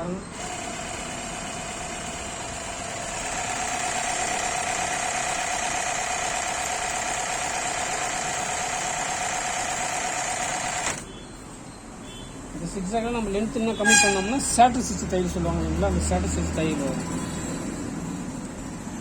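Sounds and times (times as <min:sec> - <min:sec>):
sewing machine motor whine: 0:00.3 - 0:11.0
sewing needle mechanism working: 0:00.4 - 0:11.1.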